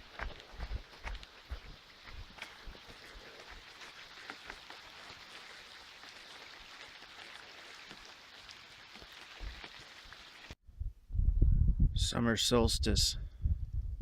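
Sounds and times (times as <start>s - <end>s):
light rain pattering: 0.0s - 10.6s.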